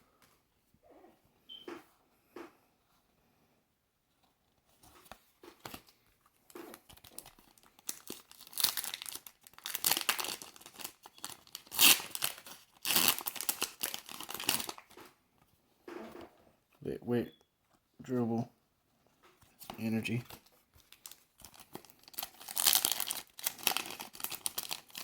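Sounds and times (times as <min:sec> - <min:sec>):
foil wrapper tearing and crinkling: 0:06.7 - 0:15.0, 0:20.1 - 0:25.0.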